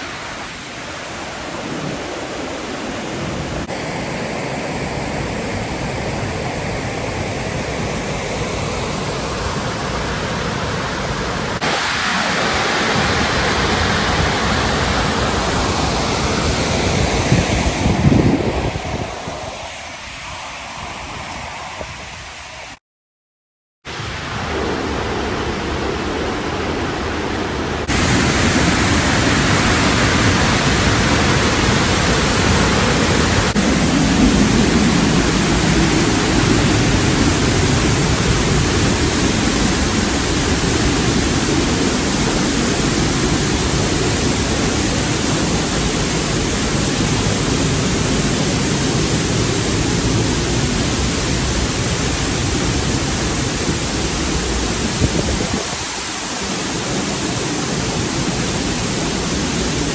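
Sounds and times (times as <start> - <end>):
waterfall roaring: 0.0 - 22.8, 23.9 - 59.9.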